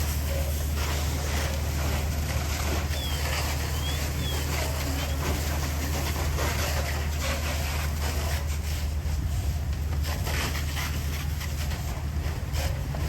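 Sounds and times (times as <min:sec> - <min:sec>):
fire engine droning: 0:00.0 - 0:10.0
fire crackling: 0:00.0 - 0:13.0.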